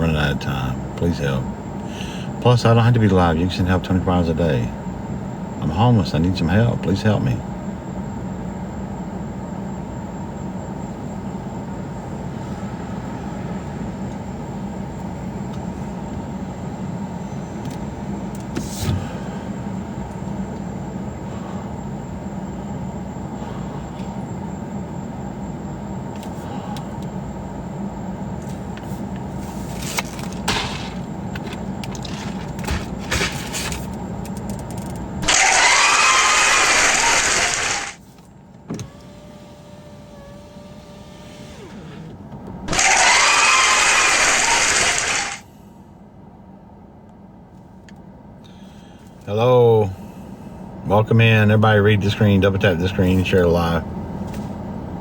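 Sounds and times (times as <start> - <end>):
car cabin rumble: 28.4 - 35.8.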